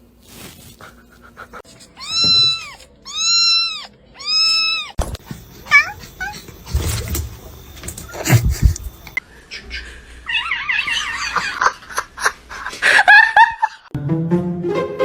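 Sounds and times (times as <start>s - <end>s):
cat meowing: 1.9s - 6.5s.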